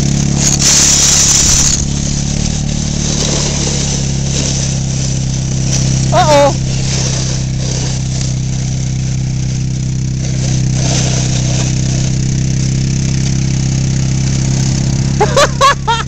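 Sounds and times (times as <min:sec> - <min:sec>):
atv engine droning: 0:00.0 - 0:16.0
person calling out: 0:06.1 - 0:06.7.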